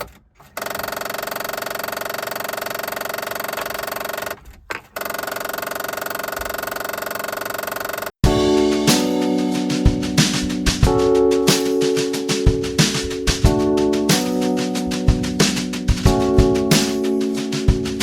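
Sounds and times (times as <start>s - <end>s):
music: 8.2s - 18.0s.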